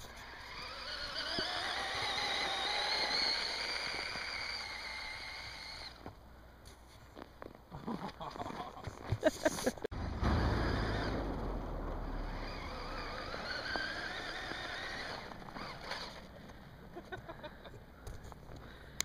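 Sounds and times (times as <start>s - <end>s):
electric motor whining: 0.0s - 6.0s, 11.9s - 16.3s.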